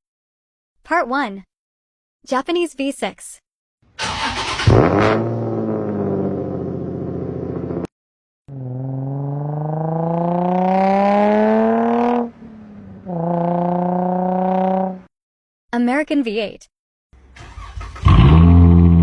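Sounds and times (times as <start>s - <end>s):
car engine accelerating: 4.0s - 7.9s, 8.5s - 15.0s, 17.2s - 19.0s.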